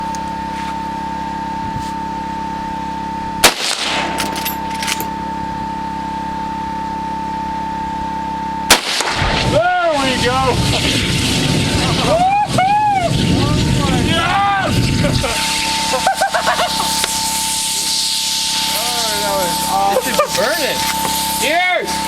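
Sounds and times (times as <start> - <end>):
steady hum: 0.0 - 22.0
rifle shots: 3.4 - 4.5, 8.7 - 9.6
crackling rush: 8.7 - 22.0.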